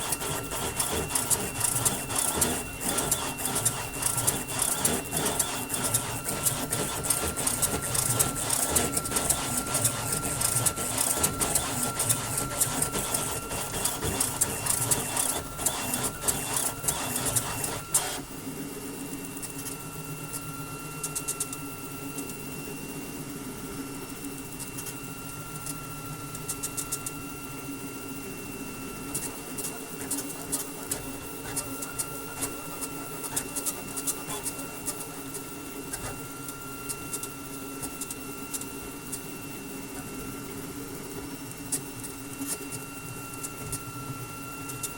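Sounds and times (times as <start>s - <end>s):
printer rattling and clicking: 0.0s - 18.2s, 29.1s - 36.2s
printer motor whine: 0.0s - 44.9s.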